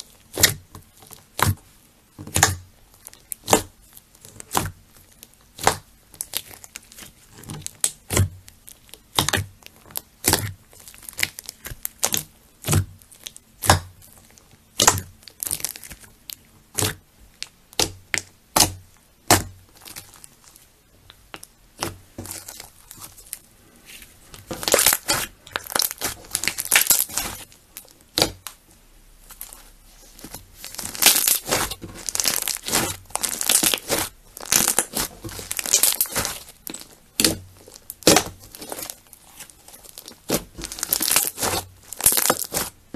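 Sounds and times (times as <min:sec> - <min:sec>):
slime squeezed and popping: 0:05.5 - 0:16.1, 0:16.7 - 0:17.0, 0:24.5 - 0:28.6, 0:29.3 - 0:42.8.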